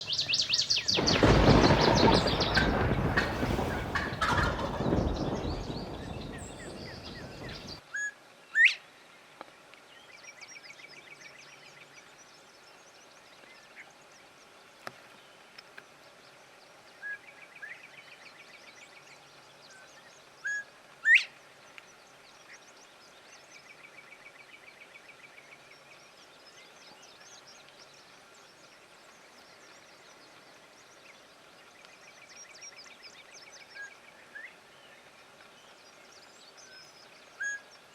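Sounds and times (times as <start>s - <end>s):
faint birds trilling: 0.0s - 7.8s.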